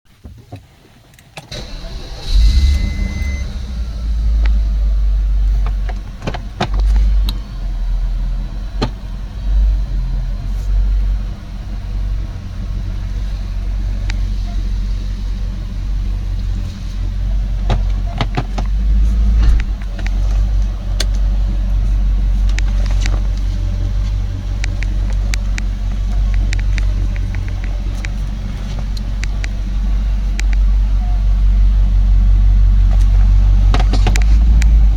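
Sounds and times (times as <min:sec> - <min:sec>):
car engine and exhaust rumbling: 0:00.1 - 0:34.9.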